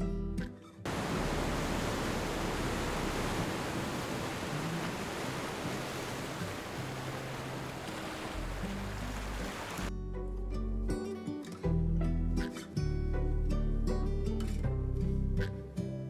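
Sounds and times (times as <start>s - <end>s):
steady rushing noise: 0.9s - 9.9s.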